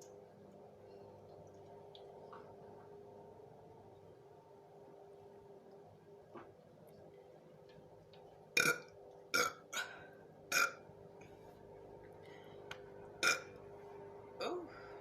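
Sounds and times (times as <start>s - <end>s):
person burping: 8.6s - 10.8s, 13.2s - 13.5s, 14.4s - 14.7s.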